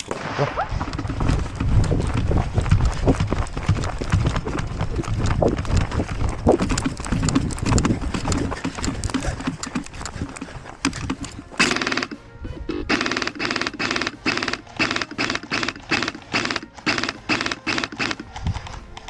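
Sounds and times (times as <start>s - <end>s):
gear rattling: 0.0s - 11.9s
running footsteps on rough ground: 0.0s - 12.3s, 13.0s - 19.0s
music: 0.1s - 19.0s.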